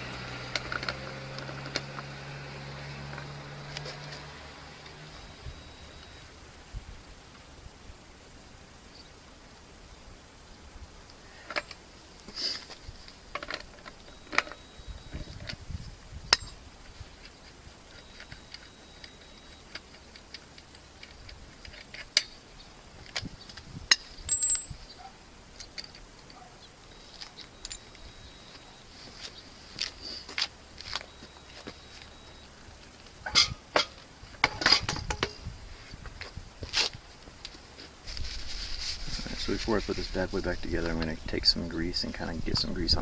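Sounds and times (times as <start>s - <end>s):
clinks of tools and metal parts: 13.3s - 15.6s, 16.3s - 16.6s, 23.0s - 25.0s, 25.6s - 28.6s, 33.3s - 35.4s.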